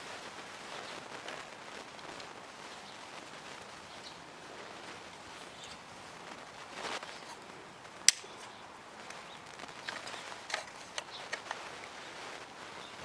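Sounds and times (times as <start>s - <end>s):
light scraping of plastic parts: 9.8s - 12.0s
small clicks: 9.8s - 12.0s.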